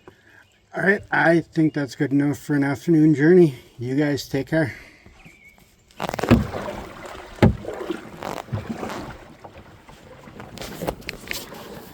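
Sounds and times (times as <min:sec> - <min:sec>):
water splashing: 0:05.9 - 0:11.9
knocks against kayak hull: 0:06.0 - 0:09.6.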